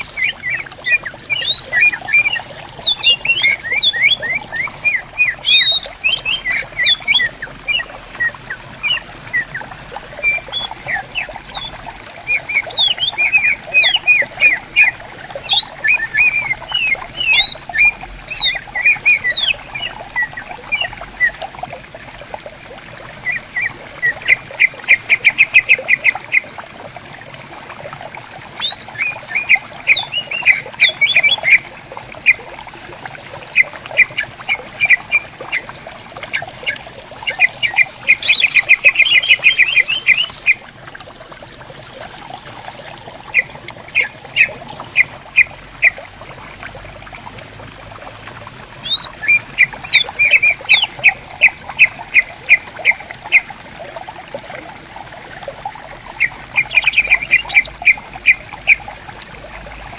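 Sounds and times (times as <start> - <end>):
birds chipping and whistling: 0.0 - 21.4, 28.6 - 31.6, 33.5 - 35.7, 36.3 - 40.6, 43.3 - 46.0, 48.8 - 53.4, 56.1 - 58.8
stream murmuring: 0.0 - 59.9
bird trill: 0.1 - 7.8, 15.5 - 20.9, 28.6 - 31.6, 36.6 - 40.6, 48.8 - 51.0, 56.2 - 58.8.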